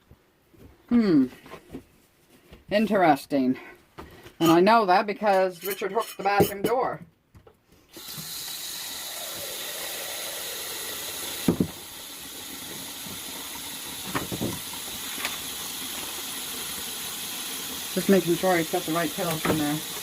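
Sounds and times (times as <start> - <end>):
steady hiss: 8.0 - 20.0.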